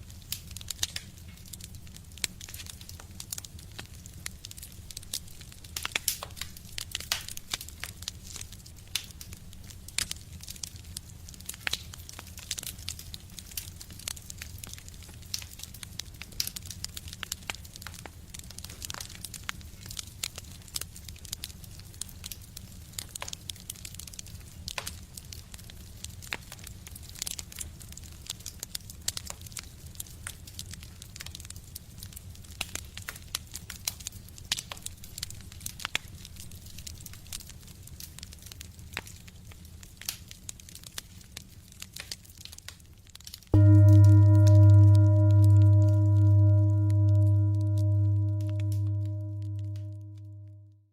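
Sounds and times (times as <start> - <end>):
low rumble: 43.6 - 50.5.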